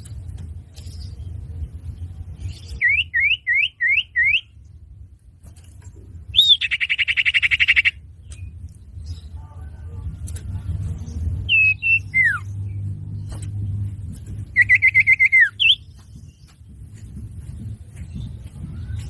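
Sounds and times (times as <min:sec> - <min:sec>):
steady low rumble: 0:00.0 - 0:19.0
bird trill: 0:02.4 - 0:04.6, 0:06.3 - 0:09.4, 0:11.4 - 0:12.8, 0:14.4 - 0:16.6
rising bird whistles: 0:14.6 - 0:15.8.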